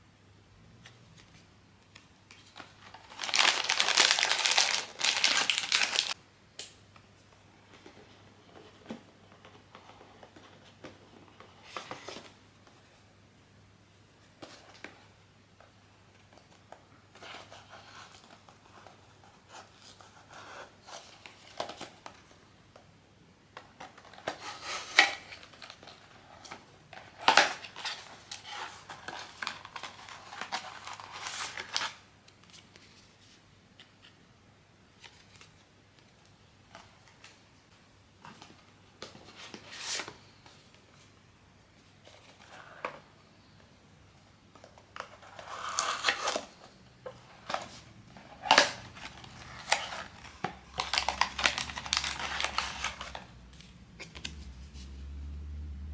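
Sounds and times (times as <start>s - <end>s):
packaging cutting and rustling: 2.9s - 6.2s, 47.5s - 54.4s.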